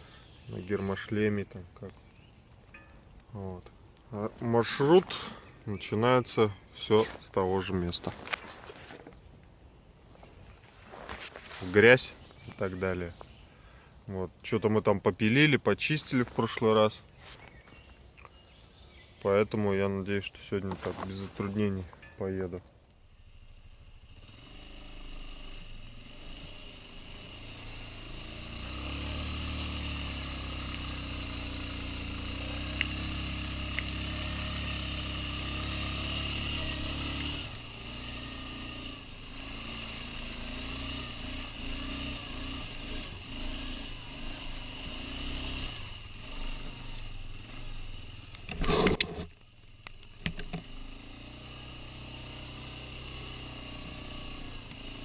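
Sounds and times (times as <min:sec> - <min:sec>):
quad bike engine running: 0:23.0 - 0:55.0.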